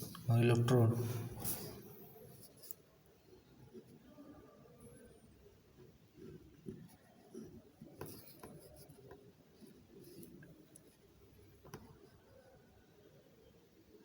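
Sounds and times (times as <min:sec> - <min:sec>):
pen scratching on paper: 0:06.2 - 0:11.0.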